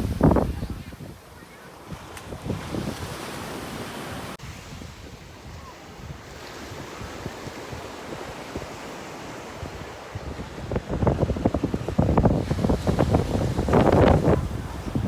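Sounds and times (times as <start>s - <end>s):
wind buffeting microphone: 0.0s - 1.3s, 1.9s - 3.3s, 9.5s - 15.0s
sea surf: 0.0s - 15.0s.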